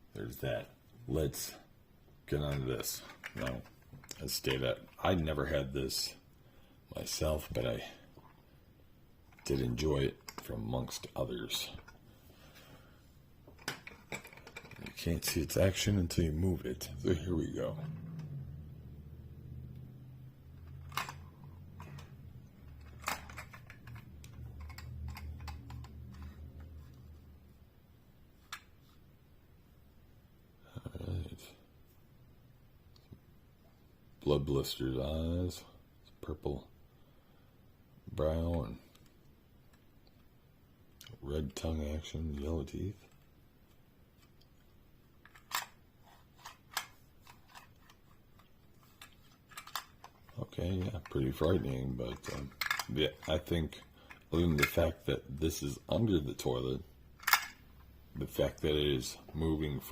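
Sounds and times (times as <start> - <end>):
plastic toy clicks: 52.5 - 52.9.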